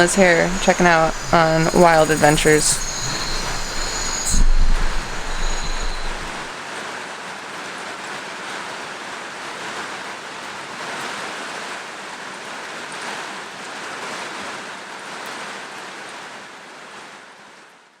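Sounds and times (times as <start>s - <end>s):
rainforest night hiss: 0.0s - 6.5s.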